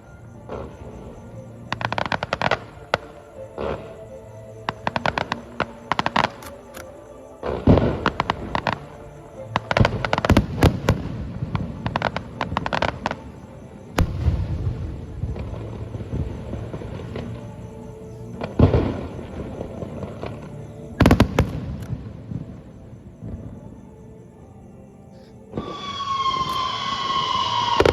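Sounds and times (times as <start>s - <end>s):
fireworks crackling and popping: 25.6s - 27.9s.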